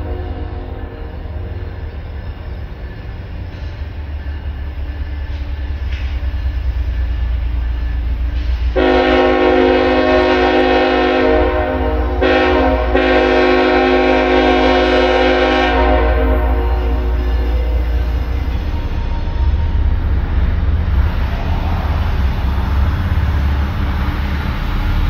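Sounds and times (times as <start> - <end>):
locomotive engine rumble: 0.0 - 25.0
multi-note air horn blasts: 8.8 - 17.8.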